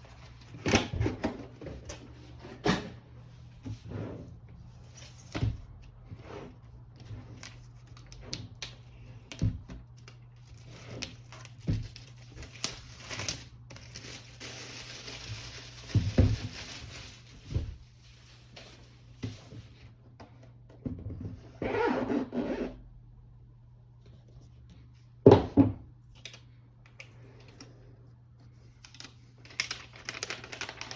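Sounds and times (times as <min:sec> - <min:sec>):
packaging rustling and sliding: 0:10.5 - 0:19.1, 0:29.4 - 0:30.9.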